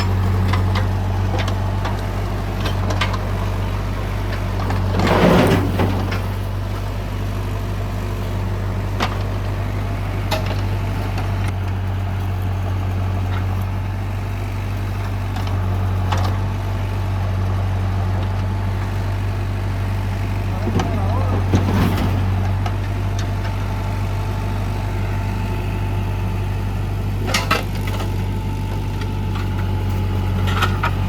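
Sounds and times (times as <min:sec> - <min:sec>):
tractor diesel engine running: 0:00.0 - 0:31.0.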